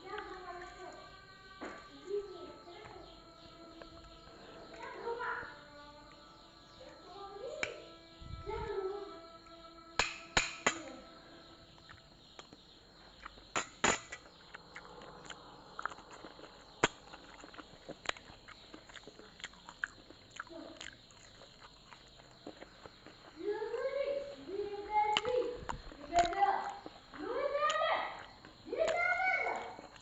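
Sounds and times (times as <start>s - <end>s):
eating clicks and crunches: 0.1s - 1.9s, 11.7s - 30.0s.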